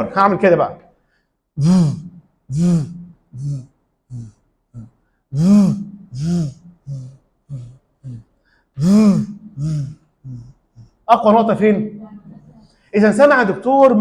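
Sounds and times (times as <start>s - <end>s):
man imitating heart murmur: 1.6s - 11.2s.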